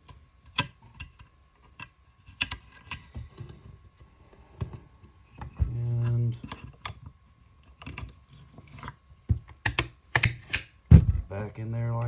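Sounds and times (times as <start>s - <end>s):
metallic clicks of rifle parts: 9.6s - 10.7s.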